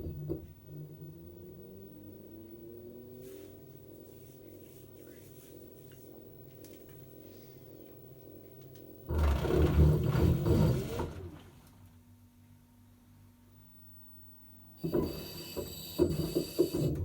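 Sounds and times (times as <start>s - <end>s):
washing machine humming: 0.0s - 13.6s, 14.5s - 17.0s
loud rough machine noise: 9.1s - 11.3s.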